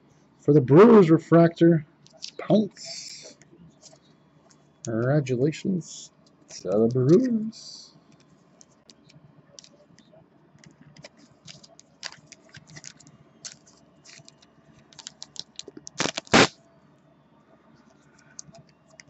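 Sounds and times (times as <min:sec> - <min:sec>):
cards clicking and scraping: 0:02.1 - 0:02.4, 0:06.5 - 0:07.4, 0:10.6 - 0:16.5.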